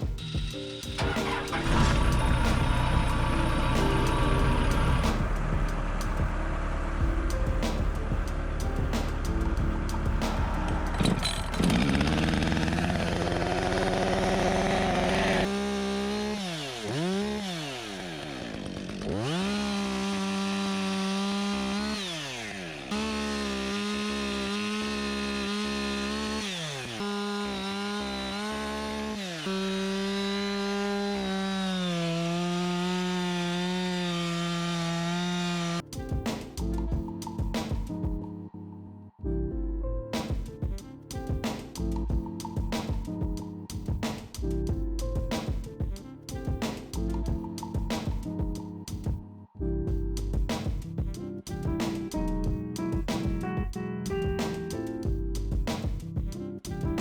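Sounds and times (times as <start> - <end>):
chainsaw revving: 0.6 - 7.0, 9.8 - 35.8.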